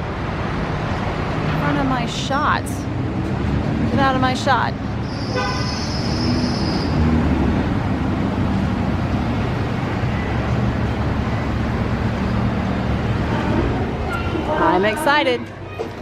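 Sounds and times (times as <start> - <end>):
traffic noise: 0.0 - 16.0.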